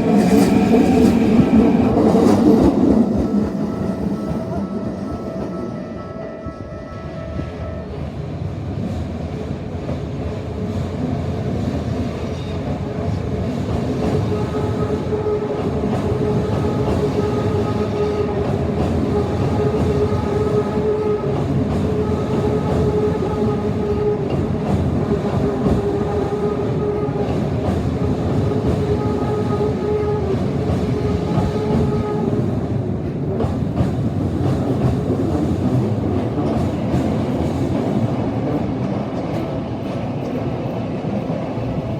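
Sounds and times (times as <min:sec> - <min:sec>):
train wheels clattering on rails: 0:08.0 - 0:41.9.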